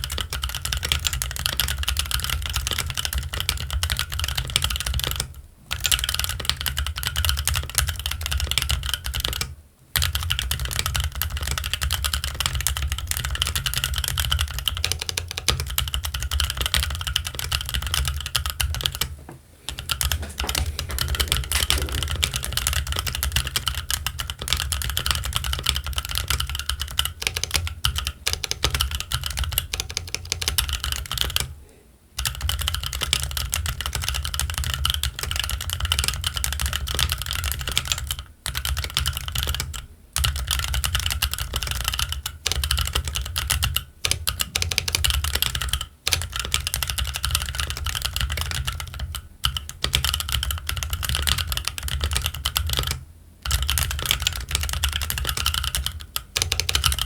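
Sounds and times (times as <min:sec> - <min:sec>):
mechanical keyboard key clacks: 0:19.8 - 0:31.5.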